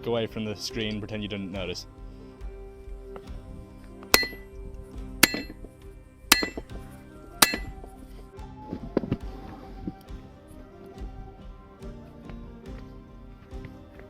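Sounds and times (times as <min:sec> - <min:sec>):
background music: 0:00.0 - 0:14.0
hammer striking steel: 0:04.2 - 0:04.4, 0:05.2 - 0:05.5, 0:06.3 - 0:06.7, 0:07.4 - 0:07.7.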